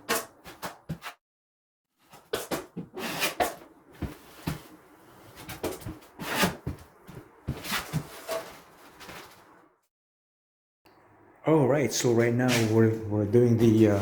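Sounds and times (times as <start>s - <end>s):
drywall knife scraping: 2.1s - 4.6s, 5.8s - 6.8s.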